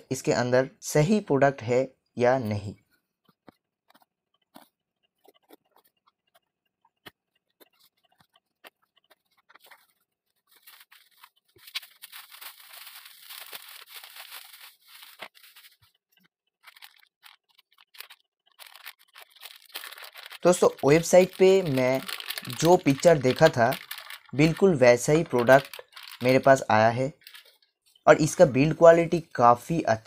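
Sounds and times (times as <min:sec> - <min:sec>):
packing scraping and rustling: 0:04.4 - 0:26.2.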